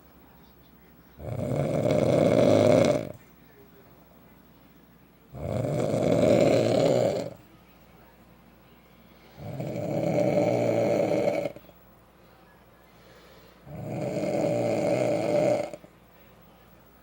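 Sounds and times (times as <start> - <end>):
man snoring loudly: 1.2 - 3.2, 5.4 - 7.4, 9.4 - 11.6, 13.7 - 15.8.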